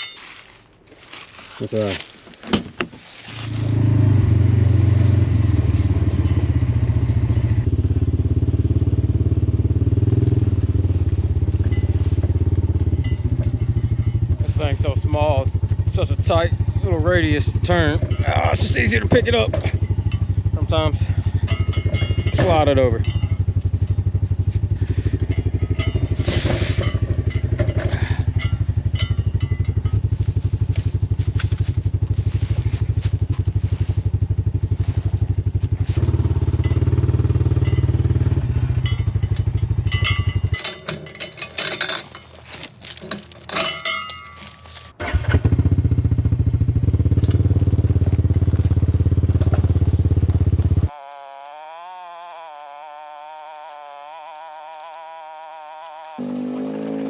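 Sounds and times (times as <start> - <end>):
utility vehicle engine running: 3.4 - 43.5, 44.4 - 57.0
knocks and clanks: 17.8 - 20.3, 21.4 - 24.0, 25.2 - 30.2, 36.5 - 45.4.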